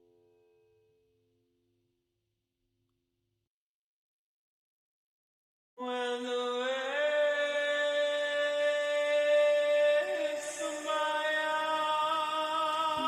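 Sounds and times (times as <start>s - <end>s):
chant-like sliding held notes: 7.0s - 13.0s.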